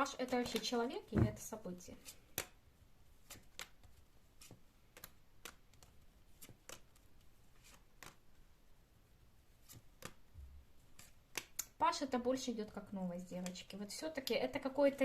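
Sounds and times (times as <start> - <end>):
cards being handled on a table: 0.2 - 8.7, 9.3 - 11.8.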